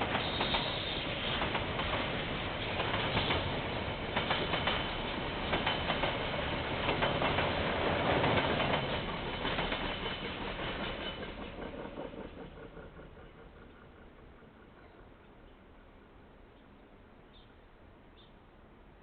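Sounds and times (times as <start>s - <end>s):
train wheels clicking over rail joints: 0.0s - 15.1s
train rumble: 0.0s - 18.0s.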